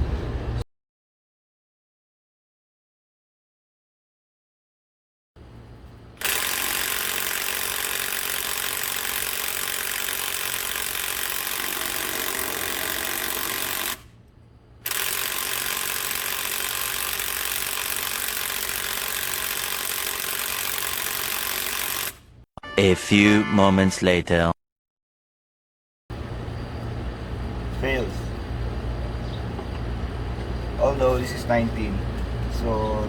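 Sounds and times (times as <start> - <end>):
impact wrench hammering: 6.2 - 14.0.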